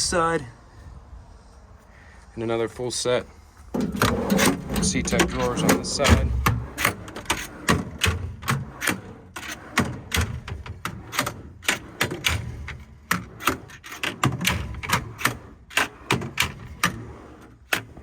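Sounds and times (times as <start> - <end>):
metal drawers sliding and shutting: 3.7 - 18.0.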